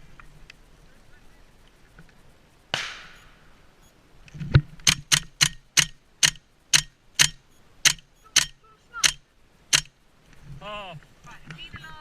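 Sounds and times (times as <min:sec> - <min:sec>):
airsoft gun shots: 0:02.7 - 0:03.2, 0:04.9 - 0:09.9.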